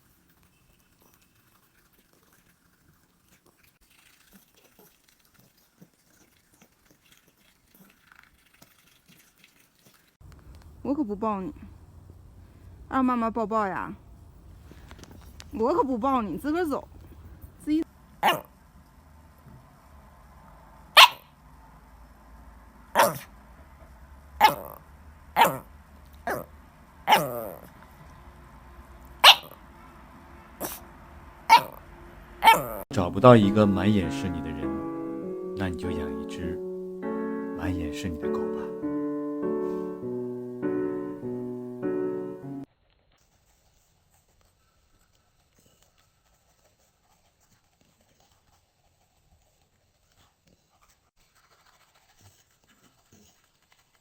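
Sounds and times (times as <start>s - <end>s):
dog barking: 18.2s - 18.5s, 21.0s - 21.3s, 23.0s - 23.3s, 24.4s - 24.8s, 25.4s - 26.5s, 27.1s - 27.7s, 29.2s - 29.6s, 31.5s - 31.8s, 32.4s - 32.8s.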